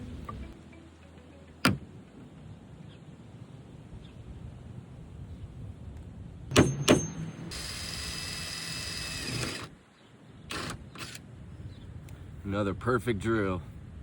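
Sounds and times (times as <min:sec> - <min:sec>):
power drill drilling metal: 0:06.6 - 0:09.7.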